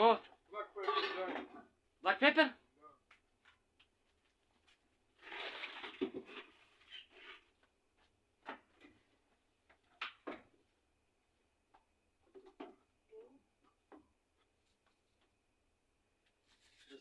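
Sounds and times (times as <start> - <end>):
rustling: 16.3 - 17.0.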